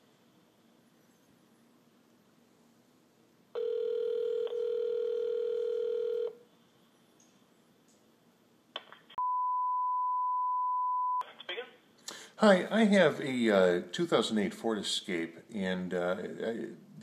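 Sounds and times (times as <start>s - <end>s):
telephone ringback tone: 3.6s - 6.4s
high steady beep: 9.2s - 11.2s.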